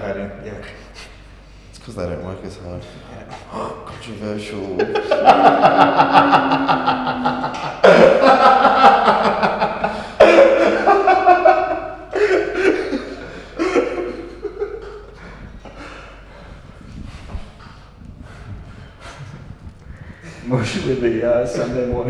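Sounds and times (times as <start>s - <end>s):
hearty laughter: 4.6s - 16.6s.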